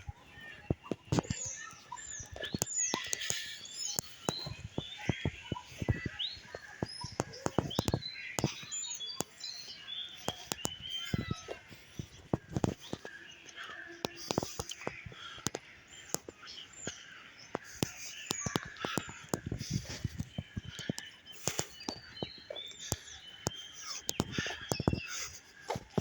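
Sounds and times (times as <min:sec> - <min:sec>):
birds chirping: 0:00.0 - 0:26.0
sharp clicks and taps: 0:00.6 - 0:09.4, 0:10.2 - 0:26.0.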